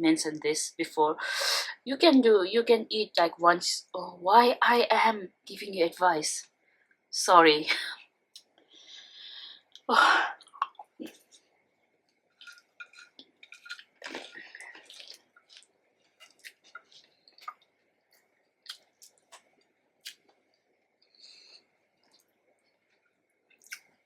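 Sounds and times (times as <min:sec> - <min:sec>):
chewing fried food: 0:10.6 - 0:24.0
mouth smacks and clicks: 0:12.4 - 0:20.4, 0:23.6 - 0:24.0.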